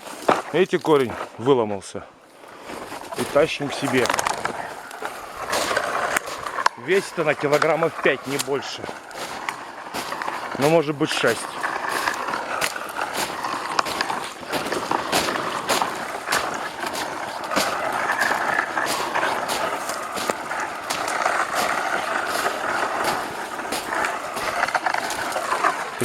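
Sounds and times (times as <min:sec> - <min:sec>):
footsteps crunching in snow: 0:00.0 - 0:01.4, 0:02.4 - 0:26.0
sapling dragged through snow: 0:02.4 - 0:26.0.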